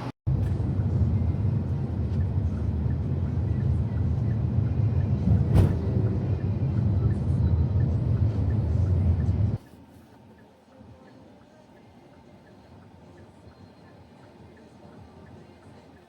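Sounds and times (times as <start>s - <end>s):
vehicle rumble: 0.0s - 9.6s.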